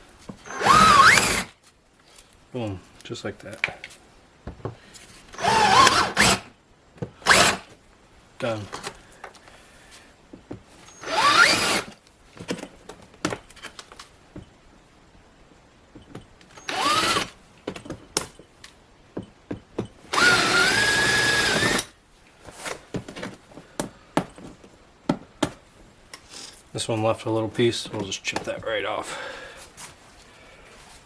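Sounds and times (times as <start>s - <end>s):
power drill spinning up: 0.4s - 1.5s, 5.3s - 6.5s, 7.2s - 7.7s, 10.9s - 12.0s, 16.6s - 17.4s, 20.1s - 21.9s.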